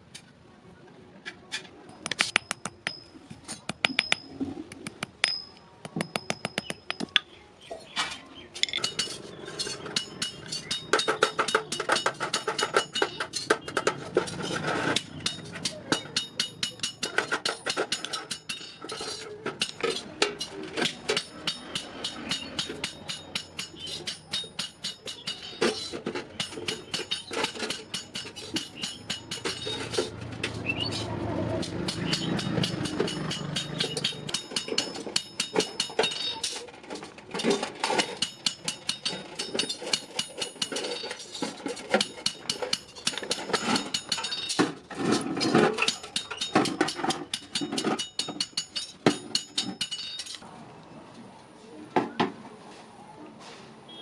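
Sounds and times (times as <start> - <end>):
hammer striking iron on anvil: 2.0 - 4.3, 5.0 - 7.2, 8.8 - 13.6, 15.0 - 18.8, 19.6 - 25.8, 26.4 - 29.8, 30.9 - 36.5, 38.0 - 41.1, 42.0 - 44.6, 45.8 - 50.4.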